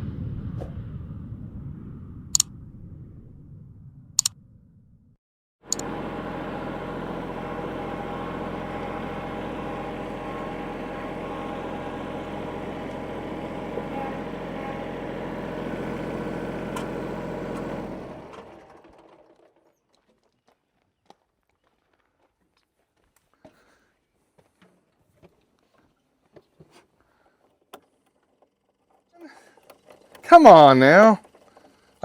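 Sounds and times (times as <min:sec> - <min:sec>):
tractor diesel engine running: 0:05.6 - 0:19.5, 0:29.6 - 0:32.0.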